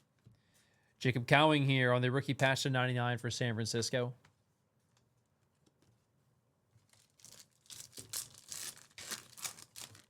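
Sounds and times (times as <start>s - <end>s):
foil wrapper tearing and crinkling: 6.9s - 10.0s.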